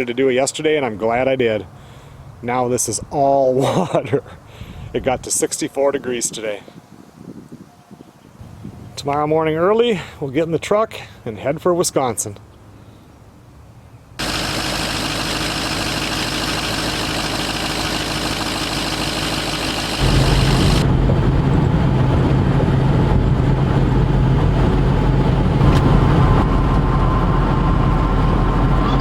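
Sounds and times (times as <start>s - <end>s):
pickup truck engine and road noise: 14.2s - 29.0s.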